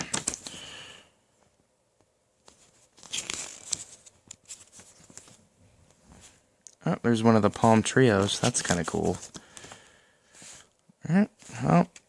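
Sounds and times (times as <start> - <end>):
paper pages rustling: 0.0 - 0.6, 2.4 - 6.4, 7.3 - 10.6.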